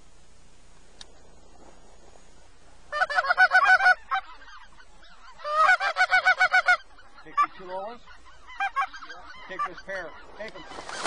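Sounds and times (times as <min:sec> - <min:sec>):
goose honking: 0:02.9 - 0:11.0.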